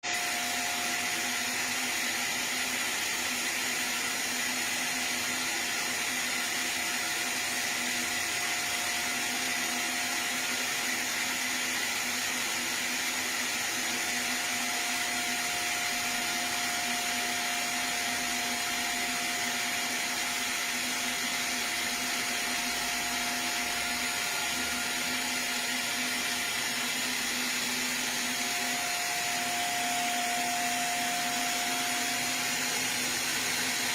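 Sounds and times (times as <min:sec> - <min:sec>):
lathe whirring hiss: 0:09.8 - 0:33.9.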